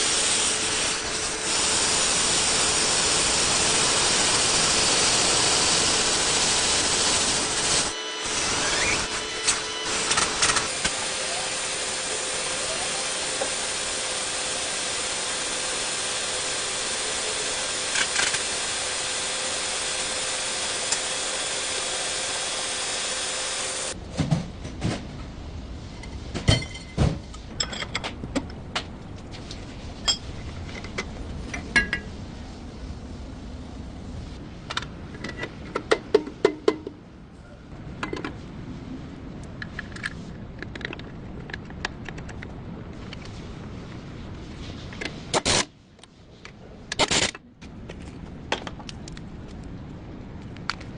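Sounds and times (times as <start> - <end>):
steady hiss with hum: 28.4 - 35.8.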